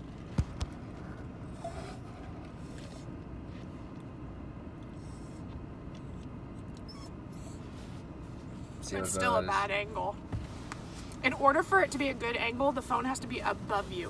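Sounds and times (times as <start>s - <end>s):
car cabin rumble: 7.6s - 14.0s.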